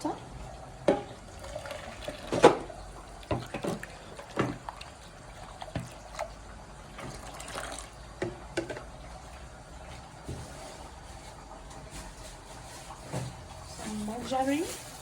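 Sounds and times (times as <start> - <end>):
water pouring into bowl: 1.1 - 8.2.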